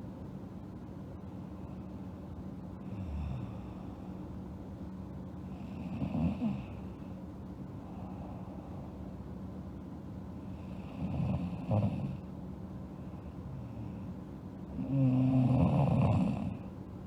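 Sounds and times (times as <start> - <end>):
girl snoring: 5.8 - 6.8, 14.8 - 16.6.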